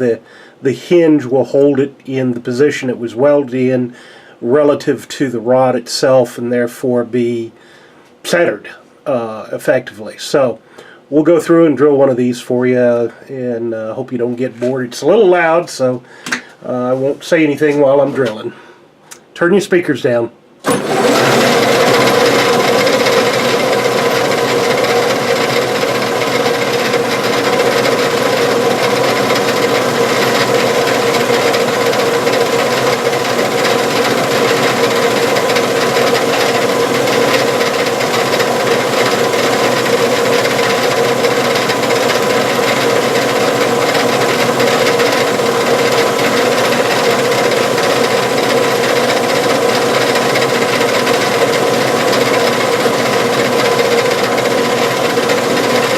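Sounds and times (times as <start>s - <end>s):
machine hum: 20.6s - 55.9s
drill bit cutting metal: 20.7s - 55.9s.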